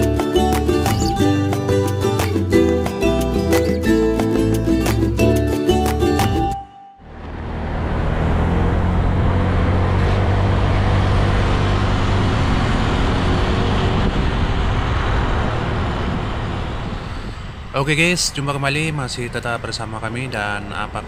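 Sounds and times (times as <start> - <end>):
music: 0.0 - 7.0
road and traffic noise: 0.0 - 21.0
low engine hum: 6.5 - 21.0.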